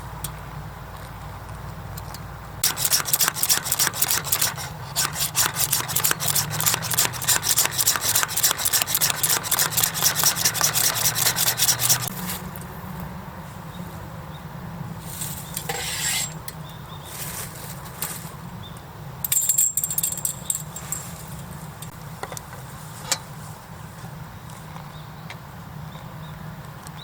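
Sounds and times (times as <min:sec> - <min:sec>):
fast regular scraping strokes: 0:02.6 - 0:12.4, 0:15.0 - 0:16.4.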